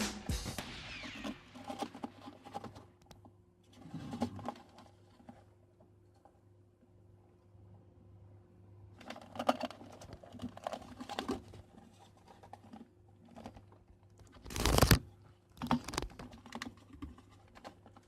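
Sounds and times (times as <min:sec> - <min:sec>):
cables rattling in cardboard can: 0:03.7 - 0:05.5, 0:09.0 - 0:18.0.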